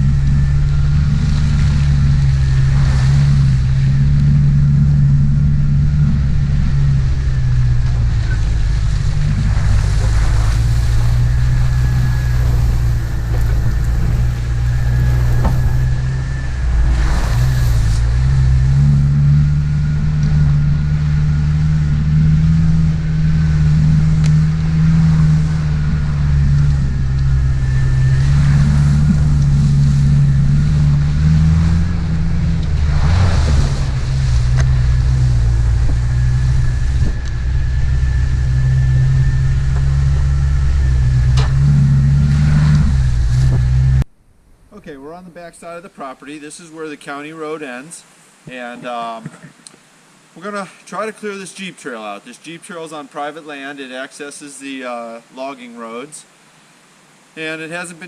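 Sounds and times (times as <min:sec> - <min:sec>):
car engine running: 0:00.0 - 0:44.1.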